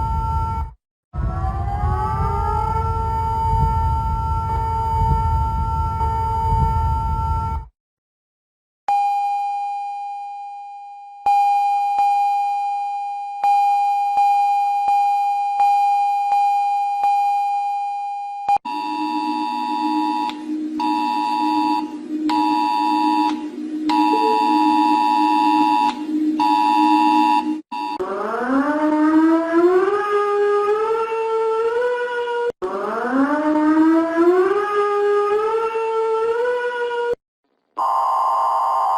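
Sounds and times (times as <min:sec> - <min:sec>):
harsh two-pitched alarm tone: 0:18.5 - 0:30.2, 0:37.8 - 0:38.9
chime-like alert tone: 0:20.8 - 0:27.4.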